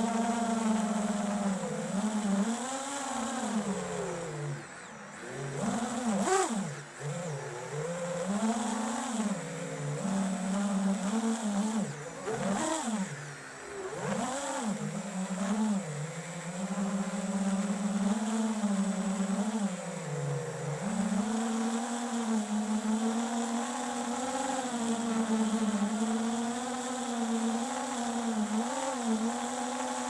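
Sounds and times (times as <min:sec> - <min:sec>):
drone motors whining: 0:00.0 - 0:30.0.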